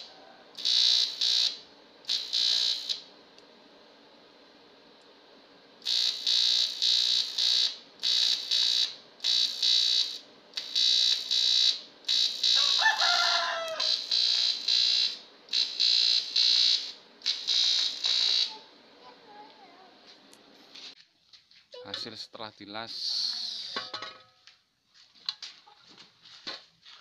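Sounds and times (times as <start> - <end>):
rooster crowing faintly: 0.0 - 0.6, 12.6 - 14.0
welding arc buzzing: 0.0 - 3.1, 5.8 - 19.6.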